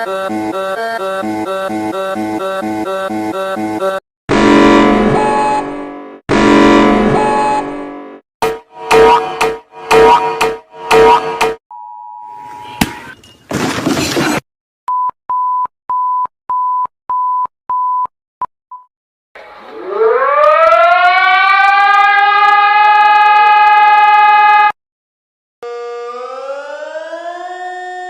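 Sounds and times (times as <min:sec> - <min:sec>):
siren winding up: 0:19.4 - 0:24.8, 0:25.6 - 0:28.0.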